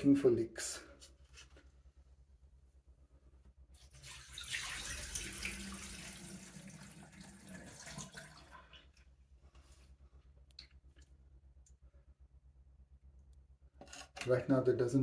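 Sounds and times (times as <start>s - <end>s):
water pouring down sink drain: 3.8s - 9.0s.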